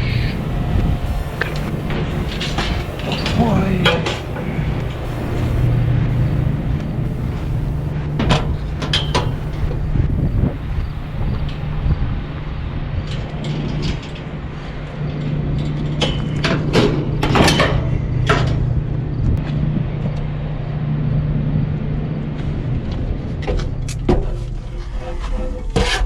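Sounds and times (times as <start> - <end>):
truck engine idling: 0.0 - 12.5.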